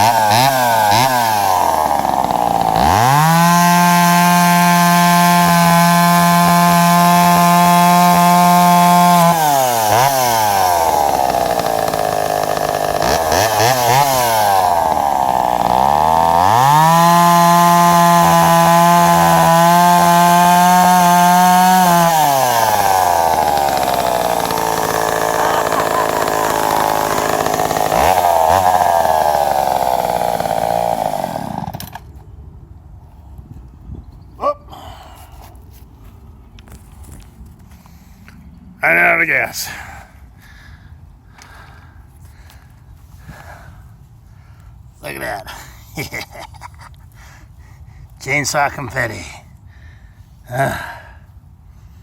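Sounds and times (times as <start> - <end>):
chainsaw cutting a log: 0.0 - 32.1.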